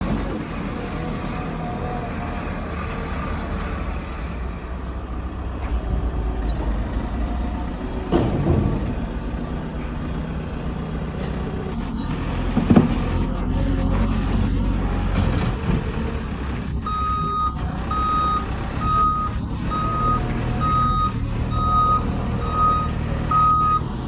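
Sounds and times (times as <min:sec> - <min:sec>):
backhoe engine droning: 0:00.0 - 0:24.0
loud clunk: 0:05.6 - 0:10.2.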